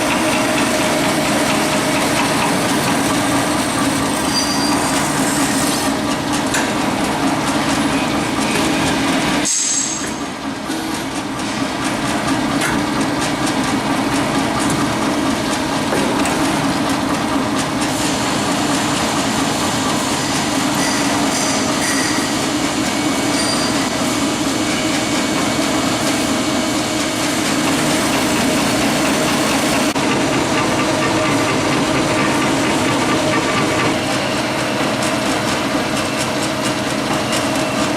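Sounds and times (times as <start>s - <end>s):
band saw cutting metal: 0.0s - 6.0s, 19.2s - 26.4s.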